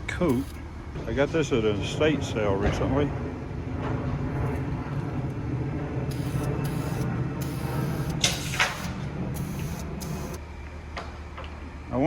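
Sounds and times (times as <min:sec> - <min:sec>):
steady low hum: 0:00.0 - 0:12.0
aerosol spray can hissing: 0:06.1 - 0:10.4.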